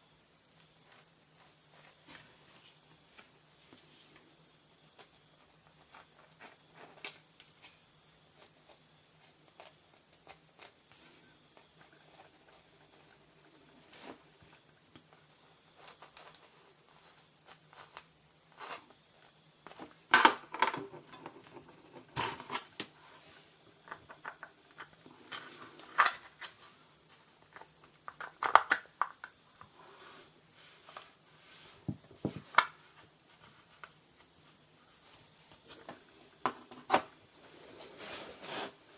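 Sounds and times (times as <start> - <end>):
small parts clicking and tapping: 0.6 - 2.3, 23.8 - 29.7
small parts clattering: 23.8 - 29.3.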